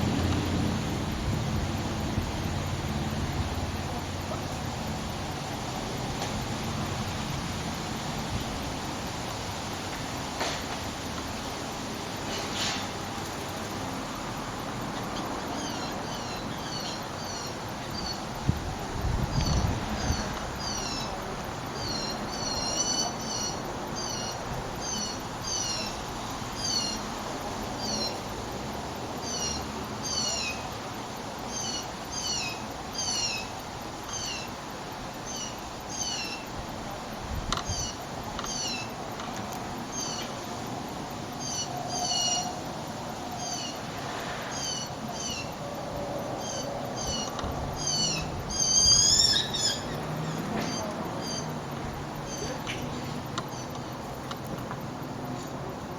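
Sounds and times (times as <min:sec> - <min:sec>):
blue jays calling: 0:44.5 - 0:55.9.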